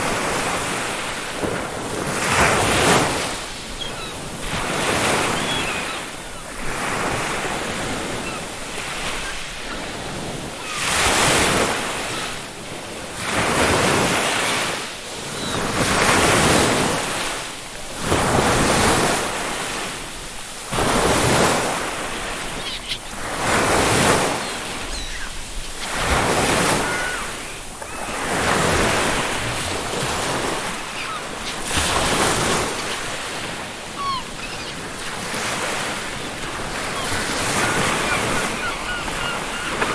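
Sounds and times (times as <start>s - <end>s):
ocean waves breaking on beach: 0.0s - 39.9s
faint seagull calls: 3.7s - 10.0s, 10.6s - 11.2s, 21.9s - 29.2s, 30.3s - 39.9s.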